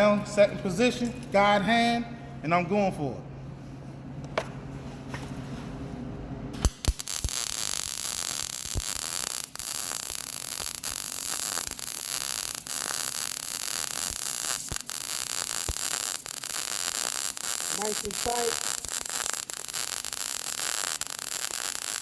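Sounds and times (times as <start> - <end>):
welding arc crackling hiss: 6.6 - 22.0
welding arc sharp pops: 6.6 - 22.0.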